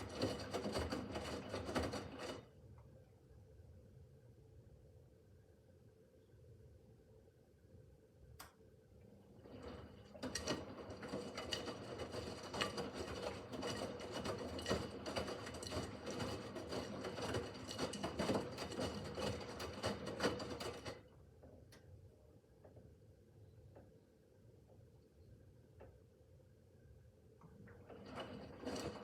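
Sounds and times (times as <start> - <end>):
washing machine motor hum: 0.0 - 2.6, 9.0 - 21.8, 27.5 - 29.0.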